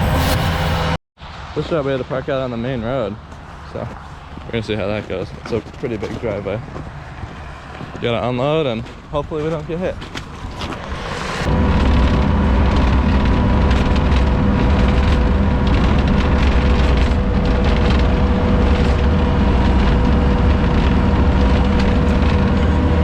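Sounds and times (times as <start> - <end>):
heavy machine engine running: 0.0 - 1.5, 10.3 - 23.0
steady whine: 0.0 - 5.1, 9.8 - 23.0
rough crackle: 9.8 - 23.0.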